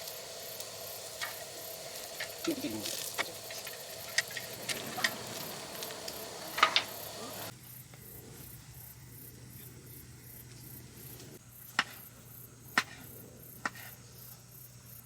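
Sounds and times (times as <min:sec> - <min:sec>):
food frying in a pan: 0:00.0 - 0:07.6.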